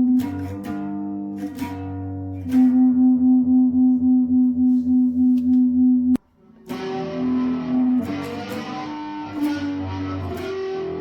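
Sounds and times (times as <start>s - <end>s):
distorted electric guitar with flanger: 0.0s - 3.2s, 6.6s - 11.0s.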